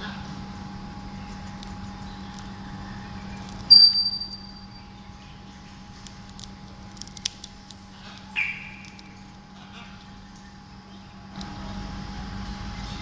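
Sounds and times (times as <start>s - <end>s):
steady low hum: 0.0s - 13.0s
bird whistled call: 3.7s - 4.8s, 8.3s - 9.0s.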